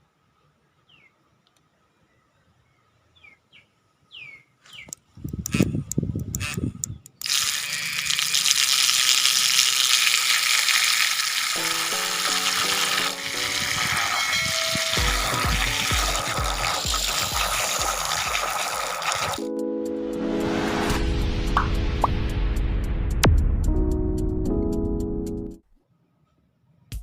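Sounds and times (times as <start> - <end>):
bird chirps: 0.8 - 1.2, 2.0 - 5.0
churning splashing water: 7.2 - 19.4
background music with stepped notes: 11.6 - 14.3, 15.0 - 16.6, 19.4 - 25.6
music beat: 11.6 - 18.0, 19.4 - 25.6.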